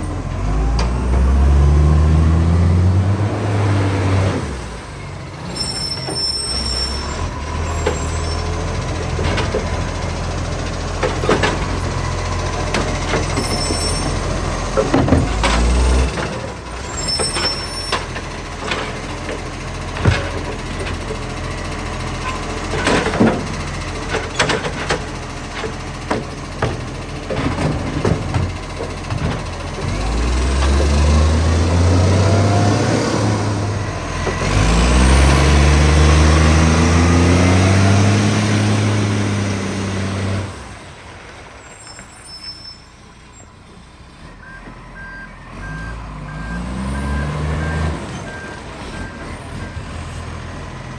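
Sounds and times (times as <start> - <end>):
diesel engine with exhaust leak: 0.0 - 50.9
knocks and clatter: 7.7 - 21.5, 22.1 - 31.0.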